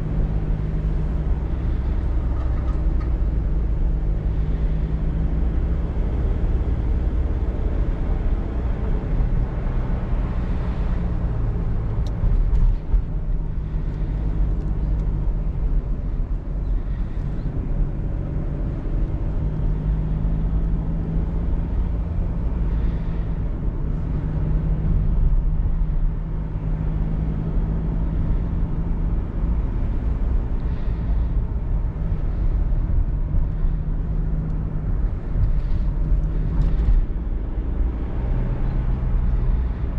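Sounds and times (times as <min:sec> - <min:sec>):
diesel car engine running: 0:00.0 - 0:39.9
road noise: 0:00.0 - 0:39.9
wind: 0:00.0 - 0:39.9.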